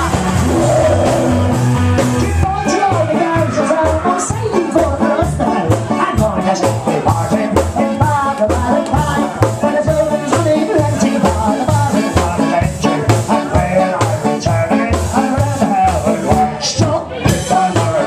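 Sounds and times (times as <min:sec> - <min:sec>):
live rock band playing: 0:00.0 - 0:18.0.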